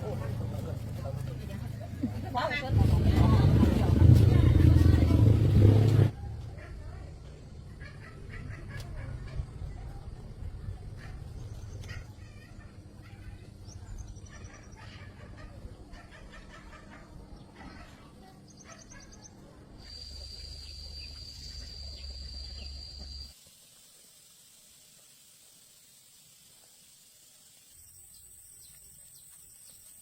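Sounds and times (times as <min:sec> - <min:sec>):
faint hiss: 0:23.3 - 0:30.0.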